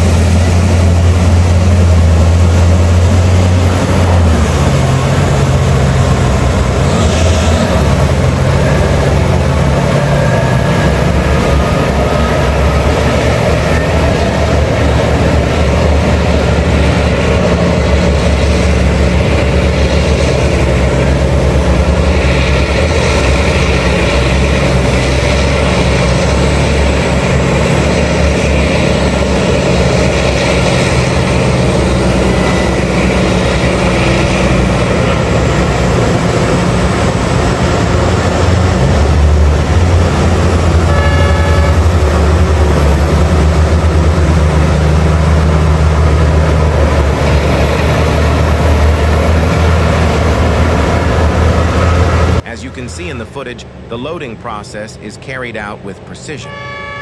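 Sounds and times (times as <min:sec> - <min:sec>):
heavy diesel engines running: 0:00.0 - 0:57.0
horn blast: 0:40.8 - 0:42.2, 0:52.4 - 0:57.0.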